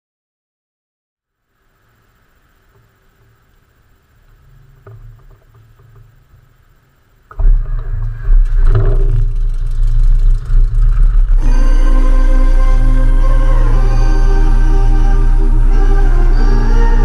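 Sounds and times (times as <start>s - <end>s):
faint hum with clicks: 1.5s - 17.0s
airplane engine starting and running: 7.2s - 17.0s.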